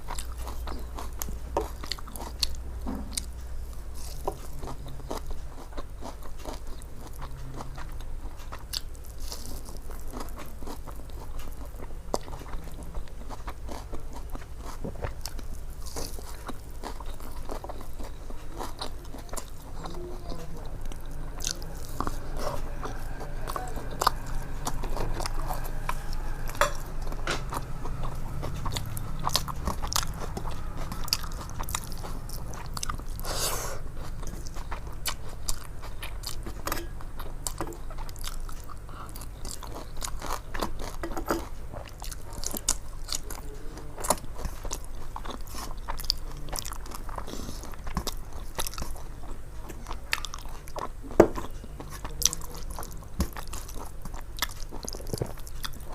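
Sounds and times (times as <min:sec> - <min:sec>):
chewing and crunching: 0:00.0 - 0:55.9
low steady hum: 0:00.0 - 0:55.9.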